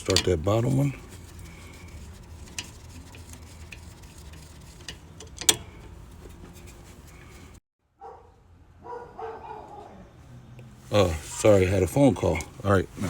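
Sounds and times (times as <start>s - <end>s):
metal tools clinking: 0.0s - 0.9s.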